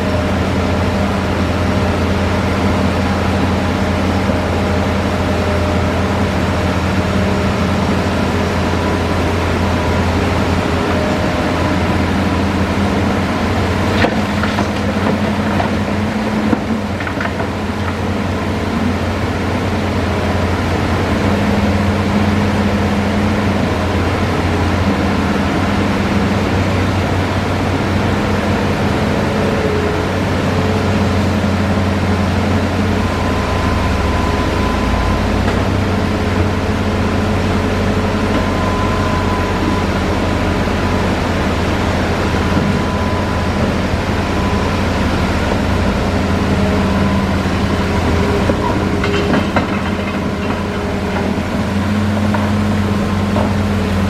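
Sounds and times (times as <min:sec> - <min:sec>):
excavator diesel engine running: 0:00.0 - 0:54.0.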